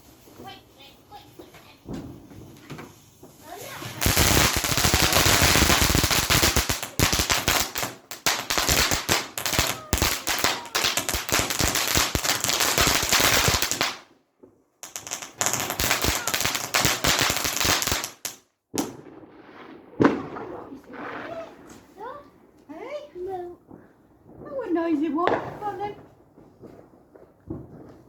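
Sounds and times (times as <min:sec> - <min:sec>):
firework cracks and bangs: 0:00.0 - 0:28.0.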